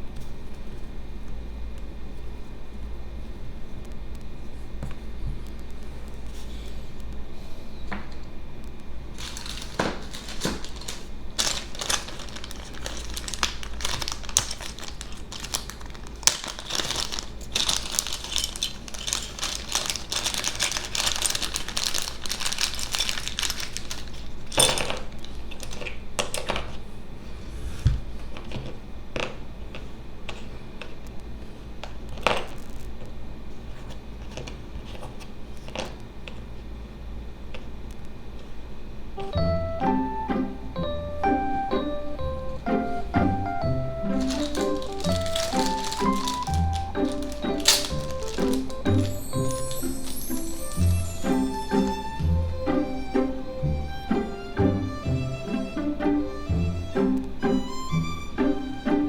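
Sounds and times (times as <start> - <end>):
plastic and paper crinkling: 9.1 - 26.8, 31.8 - 36.4, 42.8 - 52.2.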